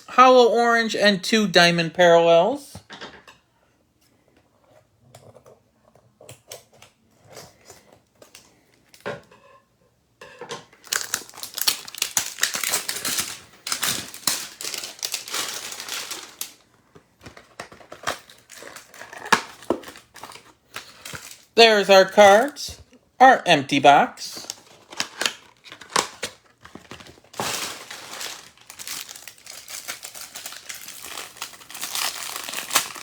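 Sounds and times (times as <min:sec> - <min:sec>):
plastic wrapping crinkling and tearing: 0:10.8 - 0:21.6, 0:24.3 - 0:33.0.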